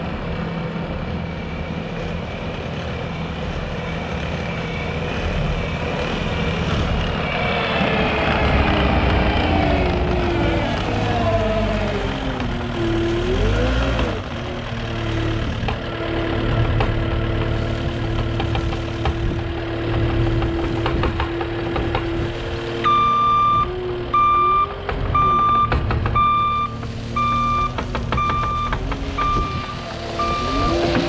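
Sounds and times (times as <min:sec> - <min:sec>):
skid steer diesel engine running: 0:00.0 - 0:31.0
reversing alarm beeping: 0:22.8 - 0:30.9.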